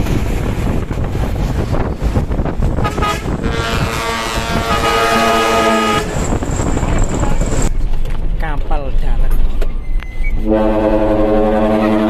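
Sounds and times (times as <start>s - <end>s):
wind noise: 0.0s - 12.0s
air horn blasts: 2.8s - 6.1s, 10.4s - 12.0s.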